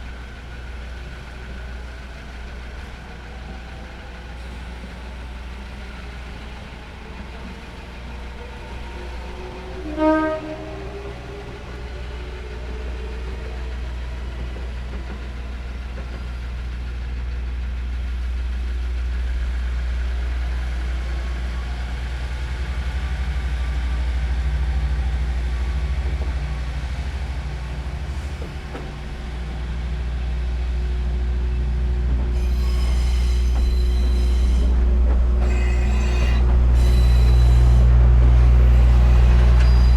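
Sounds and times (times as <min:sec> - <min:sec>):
diesel train engine rumble: 0:00.0 - 0:39.9
train horn toot: 0:08.4 - 0:13.6, 0:32.2 - 0:39.9.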